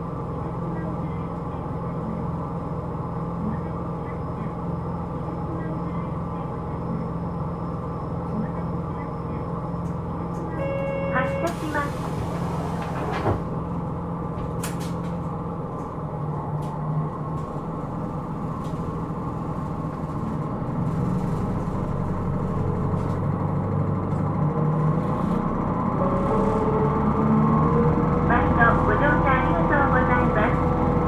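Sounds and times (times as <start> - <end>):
bus diesel engine running: 0.0 - 31.0.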